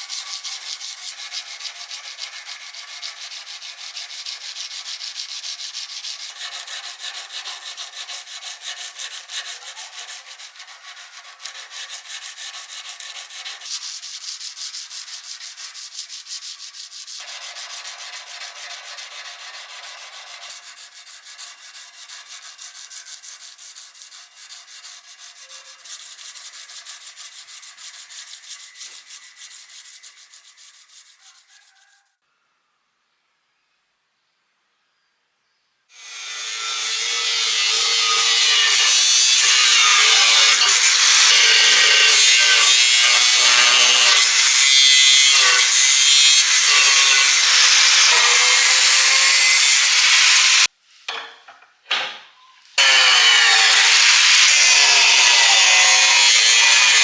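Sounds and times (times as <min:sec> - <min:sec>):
hand sanding with sandpaper: 0:00.0 - 0:32.0.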